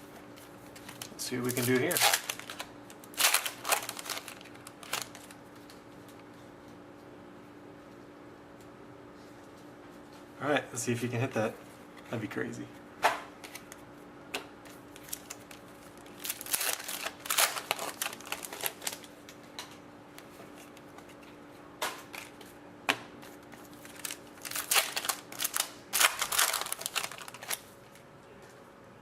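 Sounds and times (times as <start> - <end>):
wrappers crinkling: 0.8 - 5.8, 14.9 - 19.4, 23.3 - 27.9.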